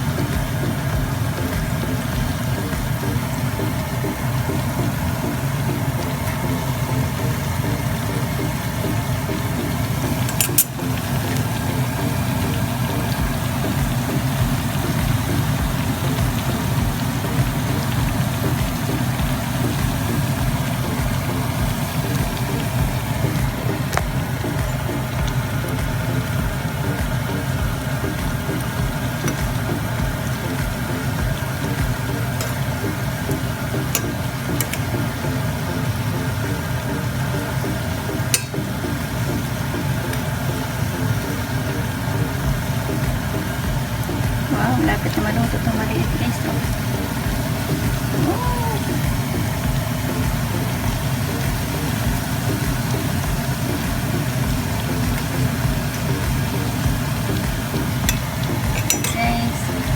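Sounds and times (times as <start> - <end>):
bananas frying in hot oil: 0.0 - 59.9
low mechanical hum: 0.0 - 59.9
sharp clink: 10.3 - 10.8.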